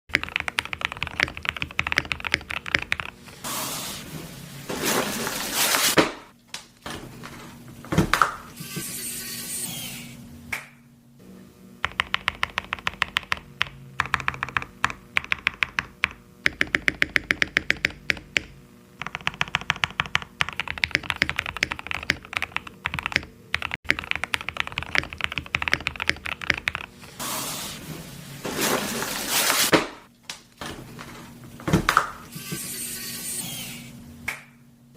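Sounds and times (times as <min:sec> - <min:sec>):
mechanical keyboard typing: 0:00.1 - 0:03.2, 0:11.8 - 0:26.9.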